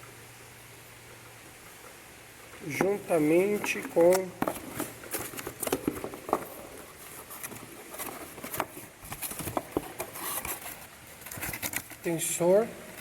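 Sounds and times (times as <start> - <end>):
parts and packaging clicks: 2.8 - 12.1.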